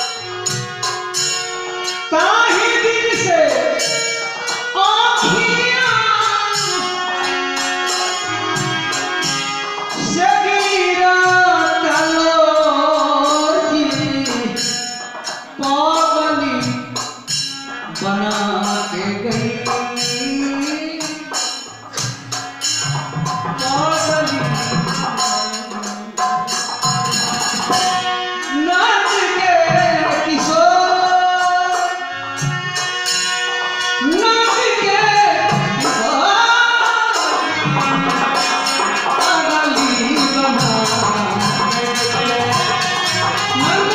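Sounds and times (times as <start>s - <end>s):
person singing folk song: 2.1s - 7.4s, 9.9s - 22.1s, 23.0s - 32.5s, 34.0s - 43.9s
drum: 21.1s - 28.8s, 35.4s - 43.9s.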